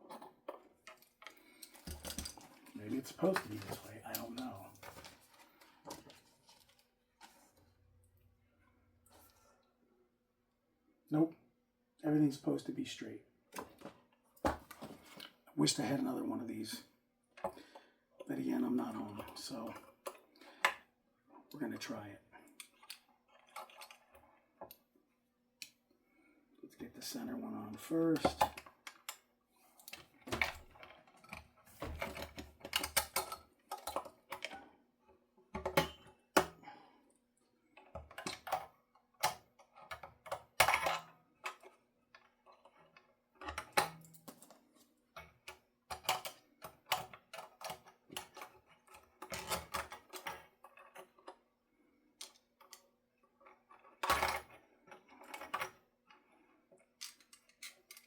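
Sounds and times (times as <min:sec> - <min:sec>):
metallic clicks and scrapes: 0:53.4 - 0:58.0.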